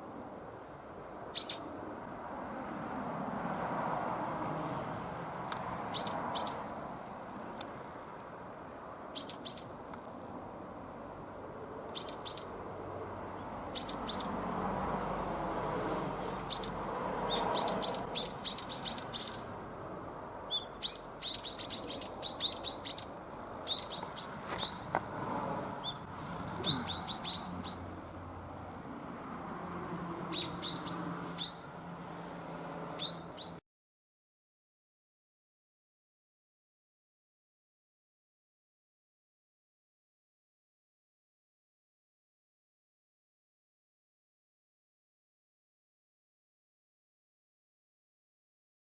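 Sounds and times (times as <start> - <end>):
bird high chirps: 1.3 - 1.7, 5.9 - 6.7, 9.1 - 9.8, 11.3 - 14.3, 16.4 - 19.6, 20.5 - 24.9, 25.8 - 27.9, 30.3 - 31.7, 33.0 - 33.6.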